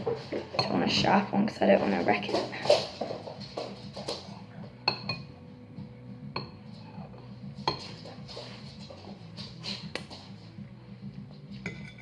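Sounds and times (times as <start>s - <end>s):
cutlery clinking on crockery: 4.8s - 5.3s, 7.6s - 8.0s, 11.6s - 12.0s
knife scraping a plate: 11.6s - 12.0s.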